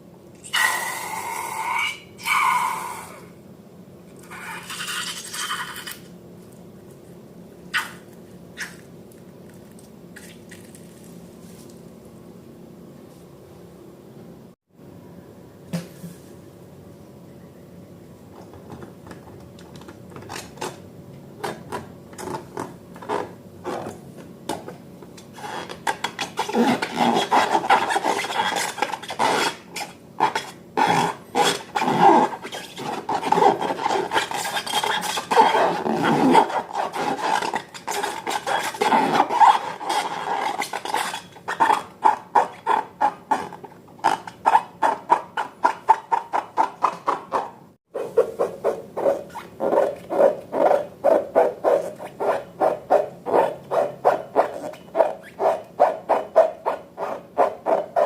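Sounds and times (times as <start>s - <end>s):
utensil scraping bowl: 25.3s - 43.5s.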